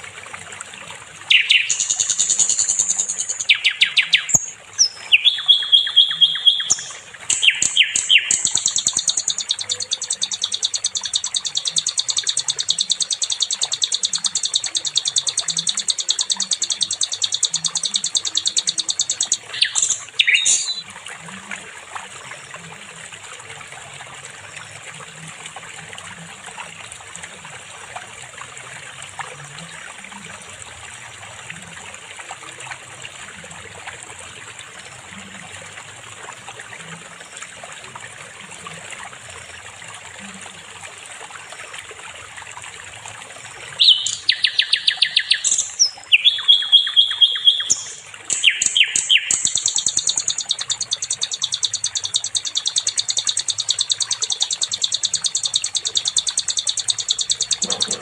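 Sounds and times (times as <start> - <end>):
stream water trickling: 0.0 - 58.0
songbird trilling: 1.3 - 20.8, 43.8 - 58.0.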